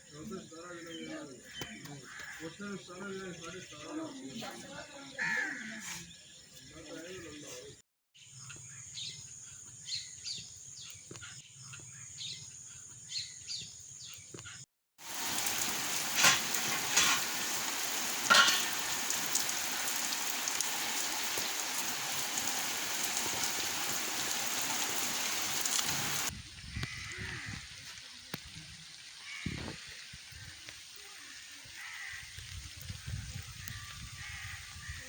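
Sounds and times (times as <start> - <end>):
rain falling: 15.0 - 26.3
sharp drips: 15.0 - 27.0.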